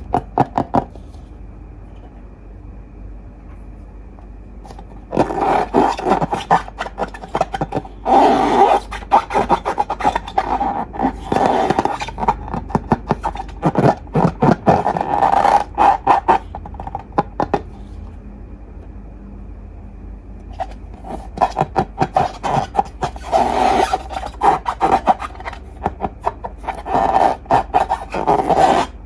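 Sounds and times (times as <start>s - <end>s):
slime squishing: 4.7s - 18.0s, 20.5s - 29.0s.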